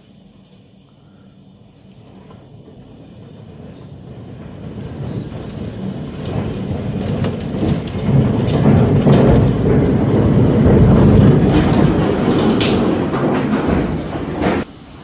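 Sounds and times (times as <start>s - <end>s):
strong storm wind rumbling: 2.6s - 14.7s.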